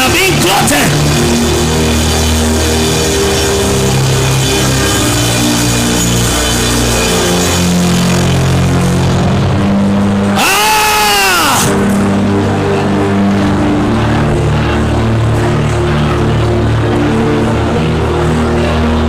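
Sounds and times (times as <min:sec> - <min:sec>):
long pitched note: 0:00.0 - 0:13.4
bass and drums: 0:00.0 - 0:19.0
keyboard chords: 0:00.0 - 0:19.0.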